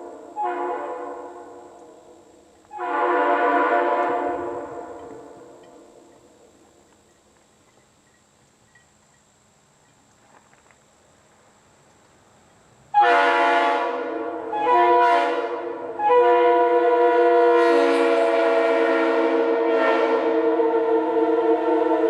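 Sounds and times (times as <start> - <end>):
locomotive air horn chord: 0.0 - 5.9, 12.9 - 22.0.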